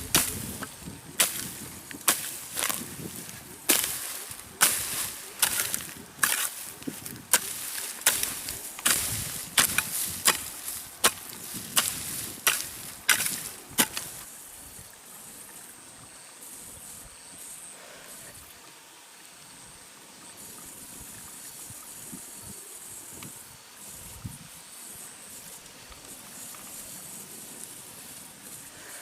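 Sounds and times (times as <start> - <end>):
blade chopping into grass and soil: 0.0 - 14.2.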